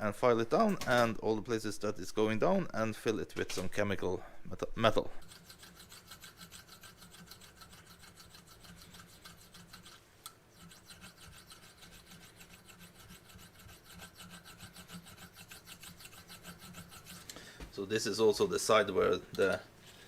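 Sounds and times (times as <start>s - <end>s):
hand file filing metal rod: 5.2s - 17.3s.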